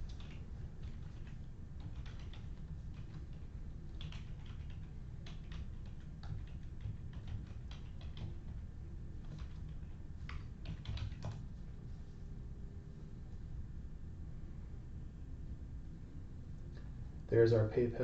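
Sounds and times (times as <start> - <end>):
computer keyboard typing: 0.0 - 11.5
steady low hum: 0.0 - 18.0.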